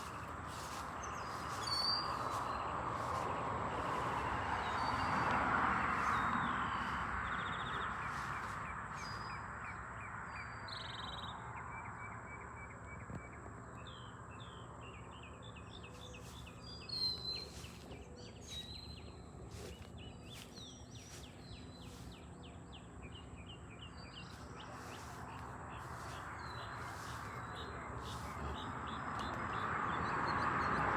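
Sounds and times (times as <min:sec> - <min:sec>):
birds chirping and calling: 0:00.0 - 0:09.8, 0:15.6 - 0:30.7.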